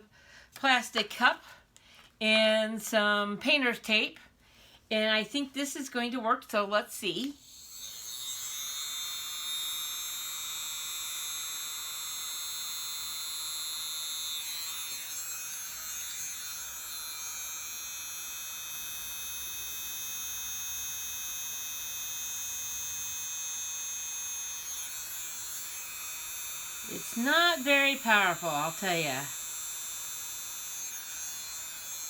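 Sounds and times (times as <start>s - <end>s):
small hair dryer whining: 7.4s - 32.0s.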